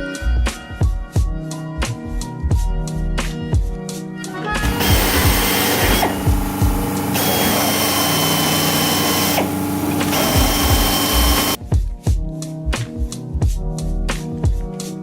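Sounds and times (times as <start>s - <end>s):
background music with steady beat: 0.0s - 15.0s
power tool whining: 4.6s - 11.6s.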